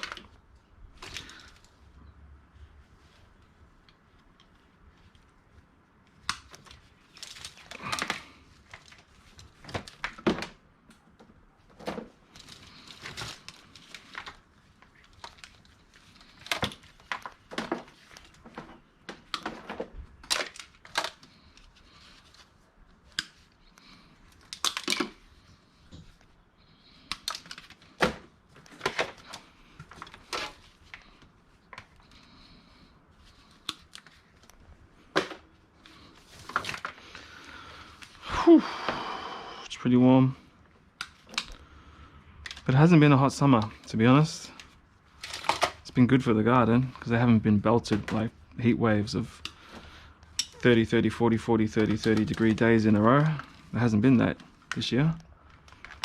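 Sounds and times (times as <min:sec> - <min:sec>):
plastic and metal clicks and crinkling: 0:00.0 - 0:01.8, 0:06.0 - 0:38.2, 0:40.8 - 0:41.6, 0:42.4 - 0:42.8, 0:44.5 - 0:46.0, 0:49.1 - 0:56.0.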